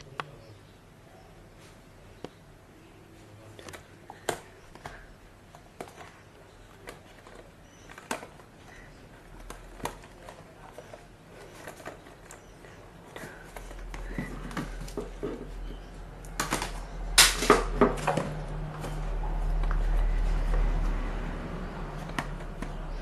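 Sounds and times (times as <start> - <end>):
packaging clicks and taps: 22.0 - 23.0.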